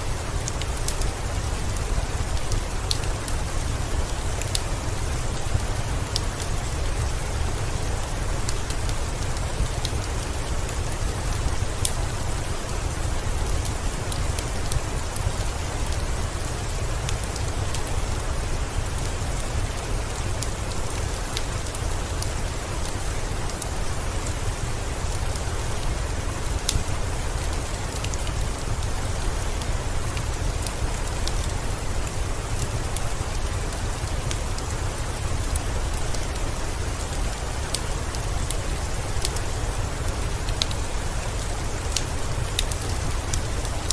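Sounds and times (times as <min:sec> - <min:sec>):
heavy rain: 0:00.0 - 0:43.9.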